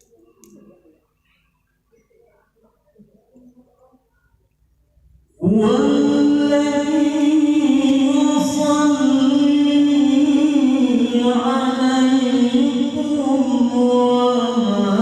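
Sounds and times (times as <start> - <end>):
man reciting melodically: 5.4 - 15.0.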